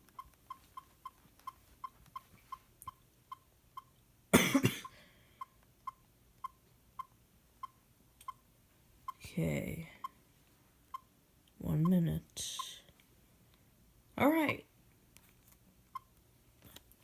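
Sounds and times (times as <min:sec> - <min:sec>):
person coughing: 0:04.3 - 0:05.1.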